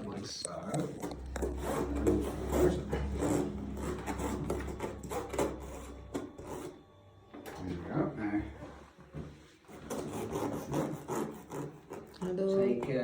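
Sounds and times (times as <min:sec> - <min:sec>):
steady low hum: 0:00.0 - 0:08.9.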